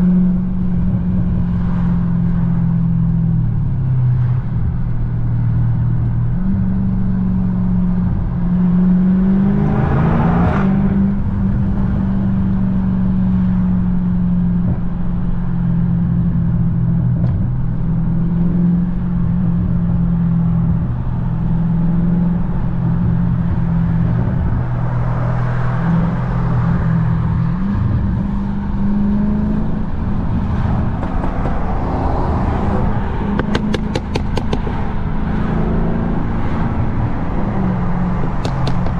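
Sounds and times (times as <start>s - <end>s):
car engine running: 16.5s - 38.9s
sharp cracks: 33.4s - 34.8s, 38.4s - 38.9s.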